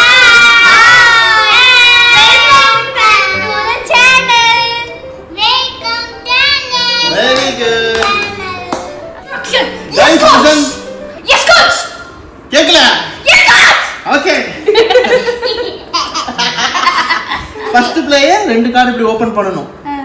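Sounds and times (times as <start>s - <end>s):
music: 0.1s - 12.2s
child singing: 1.4s - 7.3s.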